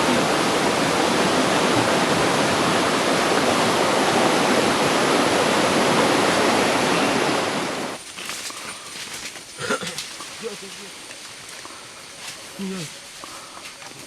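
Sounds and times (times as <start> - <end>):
rushing river water: 0.0 - 8.0.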